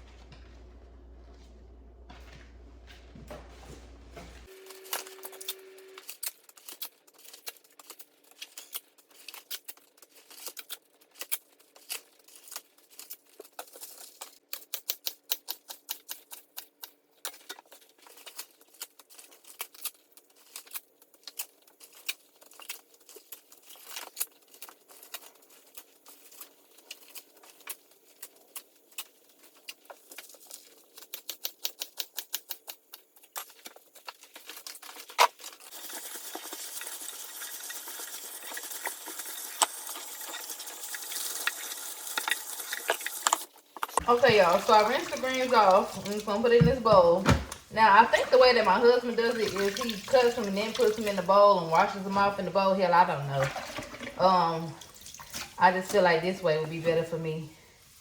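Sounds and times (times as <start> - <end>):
water dripping on wet leaves: 44.0 - 52.4.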